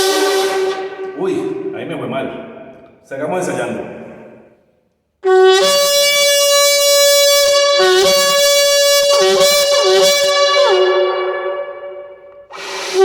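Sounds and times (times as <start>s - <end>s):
shofar horn blowing: 0.0s - 1.2s, 5.2s - 13.0s.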